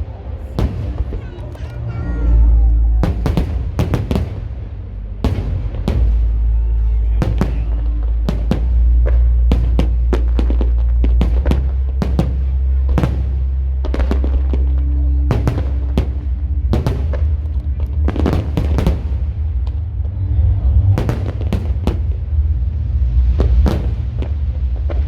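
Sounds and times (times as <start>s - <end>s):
fireworks bangs: 0.0s - 25.0s
loud music with low drone: 0.0s - 25.0s.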